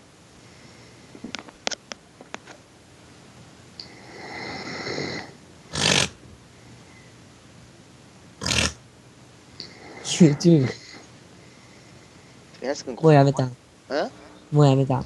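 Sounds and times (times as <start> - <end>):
person snoring: 3.8 - 6.2, 8.4 - 8.8.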